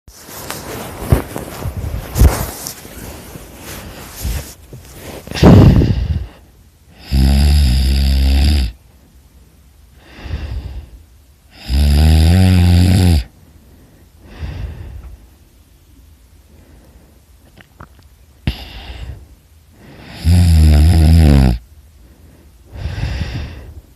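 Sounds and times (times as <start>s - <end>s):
soft breaths: 0.1s - 7.2s, 8.7s - 11.7s, 13.2s - 20.4s, 21.5s - 23.9s
person snoring: 5.2s - 8.8s, 10.0s - 13.3s, 18.5s - 19.2s, 19.8s - 21.6s.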